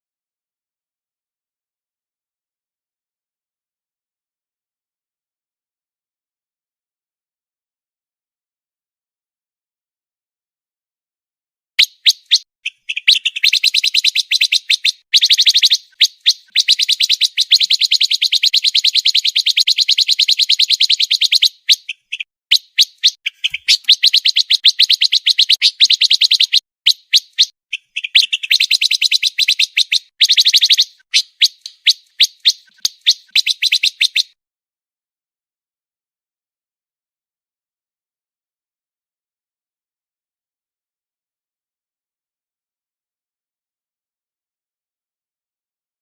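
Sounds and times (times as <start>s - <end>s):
songbird singing fast song: 11.8s - 34.4s.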